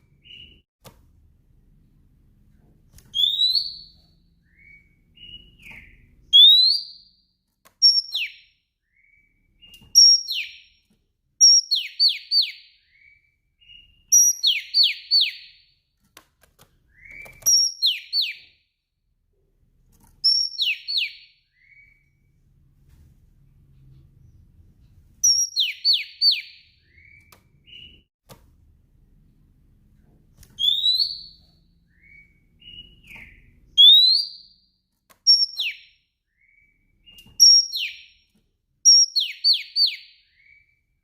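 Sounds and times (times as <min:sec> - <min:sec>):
bird whistled phrases: 0:04.5 - 0:07.1, 0:30.6 - 0:34.5.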